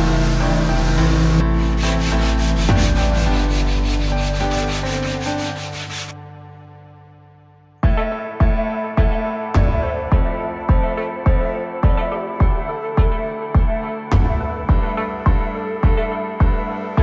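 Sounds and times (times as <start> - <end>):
rubbing scraping strokes: 0.0 - 6.2
background music: 0.0 - 17.0.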